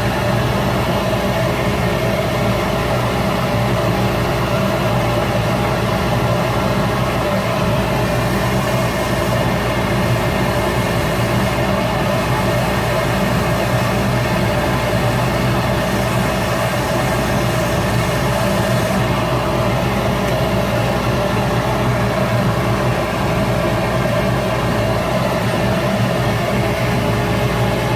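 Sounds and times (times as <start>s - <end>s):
wood lathe humming: 7.2s - 24.0s.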